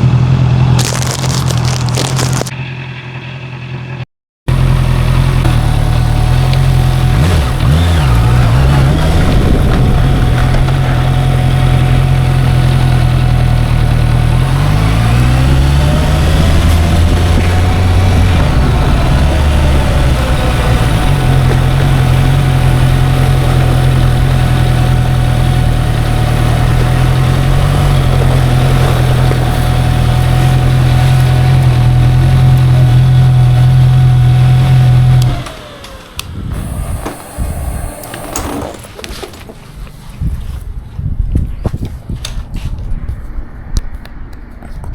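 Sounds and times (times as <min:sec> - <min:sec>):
motorcycle engine running: 0:00.0 - 0:41.4
thin steady whine: 0:36.5 - 0:38.8.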